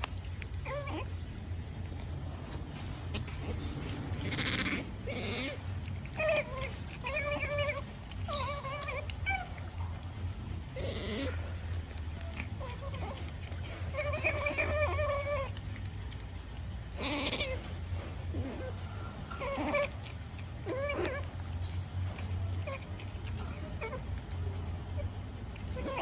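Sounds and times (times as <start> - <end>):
steady low hum: 0.0 - 25.9
otter squeaking: 0.0 - 26.0.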